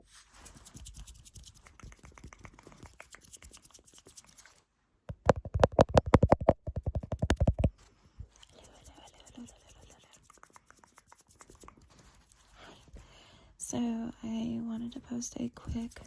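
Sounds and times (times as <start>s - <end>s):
rapid rubbing strokes: 0.0s - 4.6s, 8.4s - 13.0s
hands rubbing skin: 0.1s - 4.6s, 5.4s - 13.0s.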